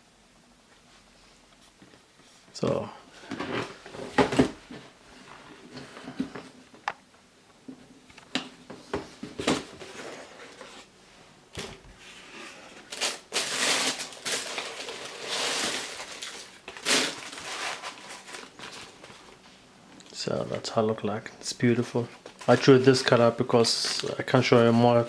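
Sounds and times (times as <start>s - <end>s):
paper rustling and crinkling: 11.6s - 19.5s, 22.0s - 25.0s.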